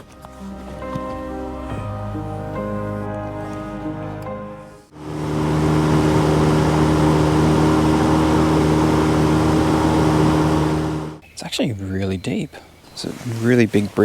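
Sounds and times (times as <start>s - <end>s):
outboard motor running: 4.9s - 11.2s.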